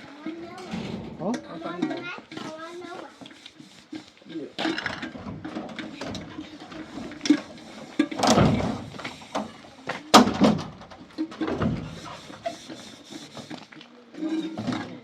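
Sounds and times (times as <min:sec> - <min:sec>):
knocks and thumps: 0:00.2 - 0:02.6, 0:04.6 - 0:13.6
scraping thump: 0:00.2 - 0:03.4, 0:04.6 - 0:12.6.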